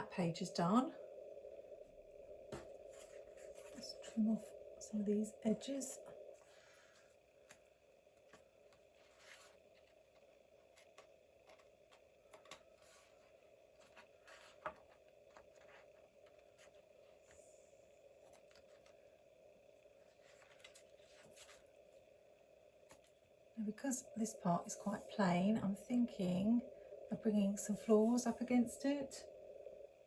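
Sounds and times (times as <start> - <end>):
faint steady hum: 0.0 - 30.0.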